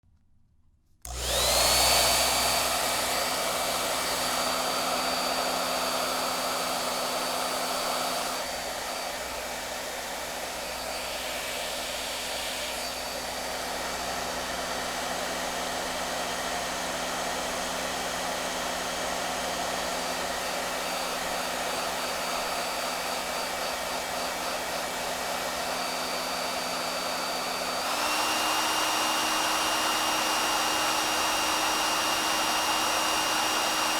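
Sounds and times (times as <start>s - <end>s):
hair dryer whirring: 1.0s - 33.9s.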